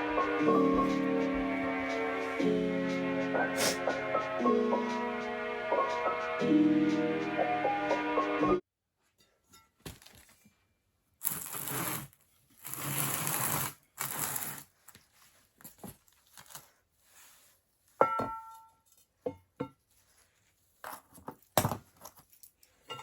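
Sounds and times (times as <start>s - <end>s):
hissing scraping on metal: 3.3s - 4.1s.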